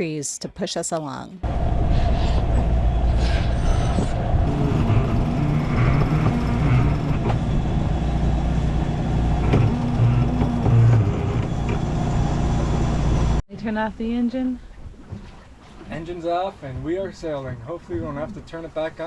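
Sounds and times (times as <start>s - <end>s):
boat engine rumbling: 1.5s - 13.4s.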